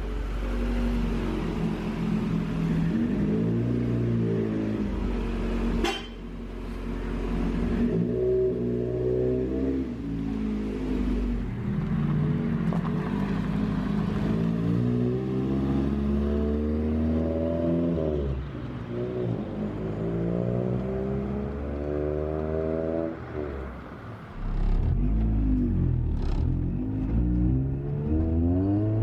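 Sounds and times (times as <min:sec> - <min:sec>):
car engine accelerating: 0:24.3 - 0:29.0.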